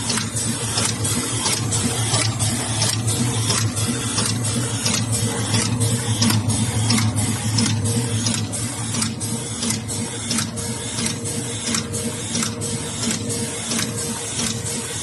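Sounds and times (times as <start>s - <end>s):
machine clattering rapidly: 0.0s - 15.0s
motor hum: 0.0s - 15.0s.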